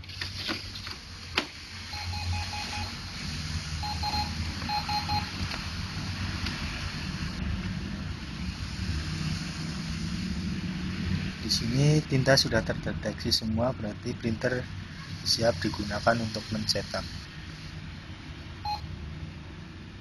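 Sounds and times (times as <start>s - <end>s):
printer beeping in rapid pulses: 1.9s - 3.0s, 3.8s - 5.4s.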